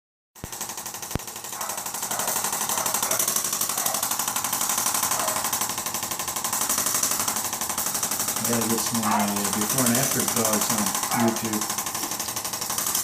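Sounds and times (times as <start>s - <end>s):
sharp clicks: 0.4s - 5.8s.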